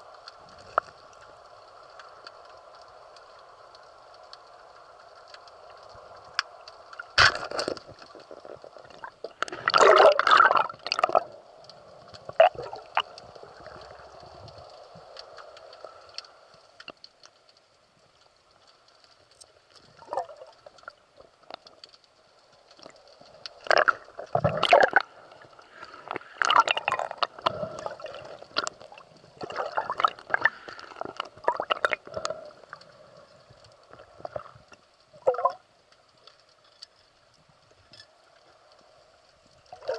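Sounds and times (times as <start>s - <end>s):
faint steady hum: 0.0s - 39.9s
water gurgling and bubbling: 8.8s - 11.3s, 23.6s - 32.7s.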